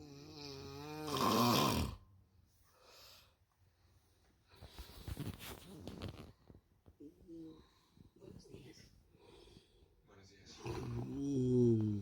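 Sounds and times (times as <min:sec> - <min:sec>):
person snoring: 0:00.0 - 0:02.0, 0:10.6 - 0:12.0
faint breath: 0:09.1 - 0:10.0.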